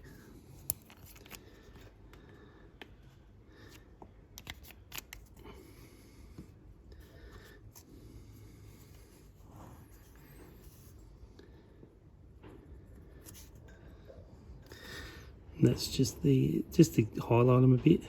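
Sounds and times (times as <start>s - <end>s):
quiet room hiss: 0.0s - 18.0s
paintbrush and plastic model handling: 0.1s - 1.9s, 4.4s - 5.4s.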